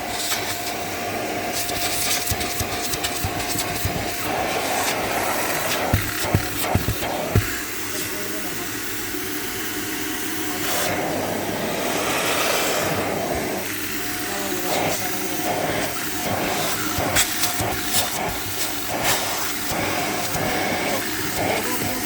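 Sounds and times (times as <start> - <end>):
carpet cleaner suction motor: 0.0 - 22.0
sucking pulses: 10.6 - 17.1.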